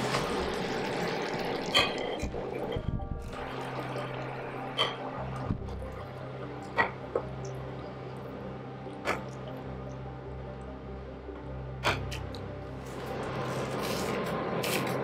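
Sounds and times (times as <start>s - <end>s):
sauce bubbling in a pan: 0.0s - 5.4s
steady low hum: 2.3s - 15.0s.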